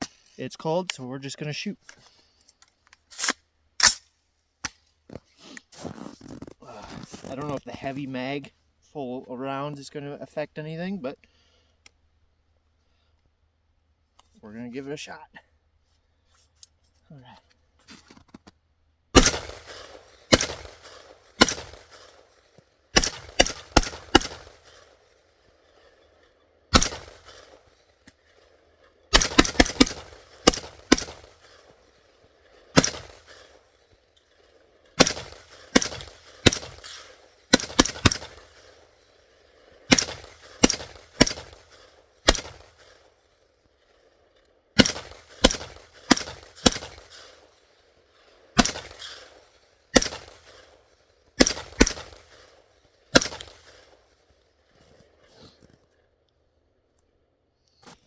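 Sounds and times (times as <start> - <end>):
rifle shots: 19.1 - 43.3, 44.8 - 47.6, 48.4 - 54.0.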